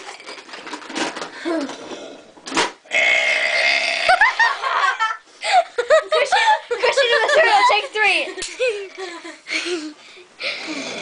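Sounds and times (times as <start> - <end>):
child burping: 2.9 - 4.4.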